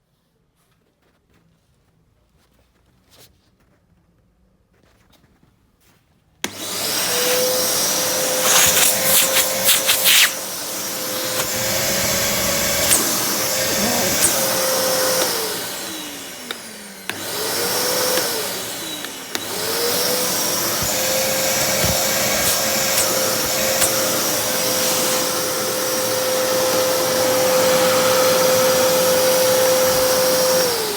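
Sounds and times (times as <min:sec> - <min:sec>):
vacuum cleaner motor whine: 0:06.4 - 0:30.9.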